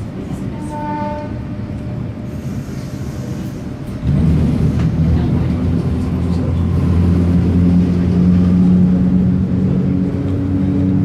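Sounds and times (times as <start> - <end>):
train rumble: 0.0 - 11.0
train horn tone: 0.6 - 1.5.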